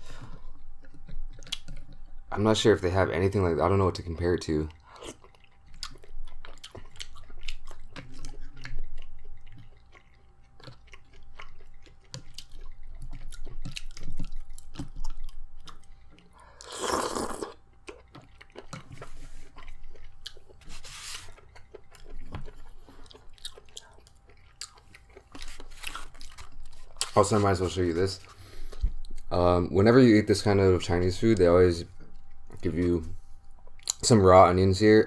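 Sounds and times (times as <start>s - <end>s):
chewing with wet mouth clicks: 0.2s - 2.3s, 4.0s - 27.5s, 28.2s - 29.3s, 31.3s - 34.1s
noisy eating burst: 16.4s - 18.1s.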